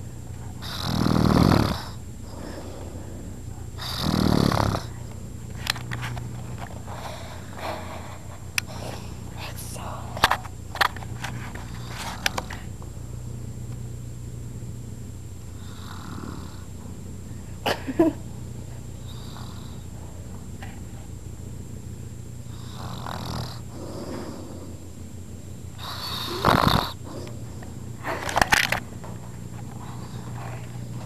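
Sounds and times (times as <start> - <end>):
steady low hum: 0.0 - 31.0
man snoring: 0.6 - 5.0, 15.6 - 16.7, 22.5 - 24.8, 25.8 - 27.3.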